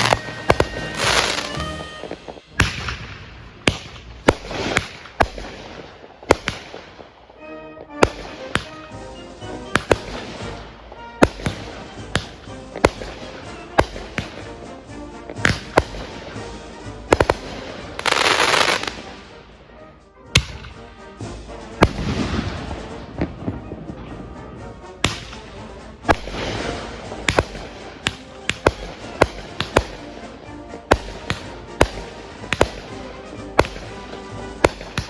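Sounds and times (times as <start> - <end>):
fireworks hissing burst: 0.0 - 5.1
fireworks bangs: 0.0 - 35.0.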